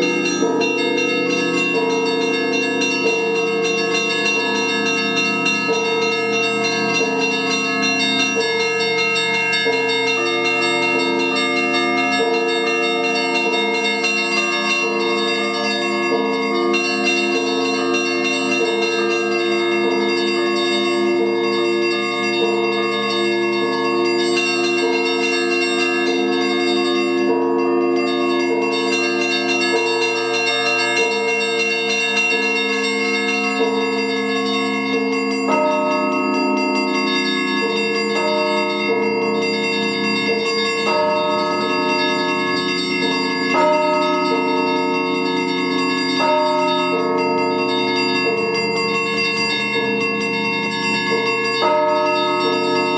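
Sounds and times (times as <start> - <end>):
church bells pealing: 0.0 - 52.9.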